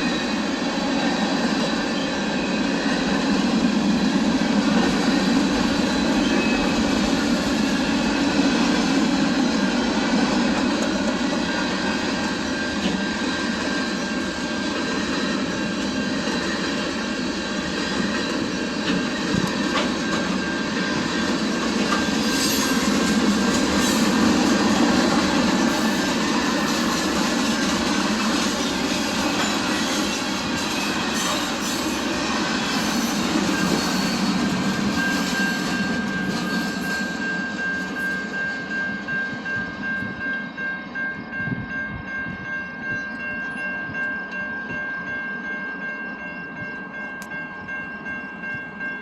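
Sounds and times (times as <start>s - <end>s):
train wheels rumbling on rails: 0.0s - 49.0s
high wheel squeal: 4.7s - 8.5s, 21.8s - 38.7s.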